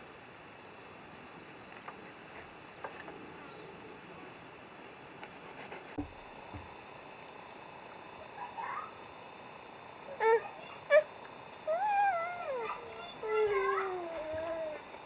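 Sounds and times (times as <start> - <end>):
high insect drone: 0.0 - 15.0
dog whining and yelping: 11.7 - 14.8.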